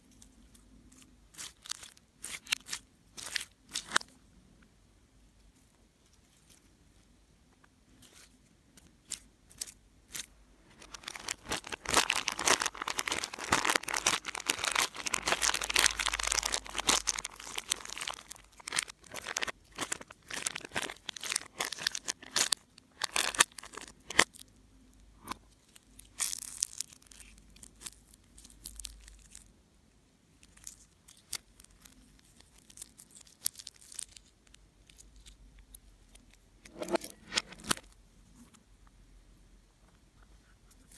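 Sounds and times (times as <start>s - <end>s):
slime crackling and popping: 1.3s - 4.0s, 9.0s - 24.5s, 25.2s - 29.5s, 30.4s - 36.4s.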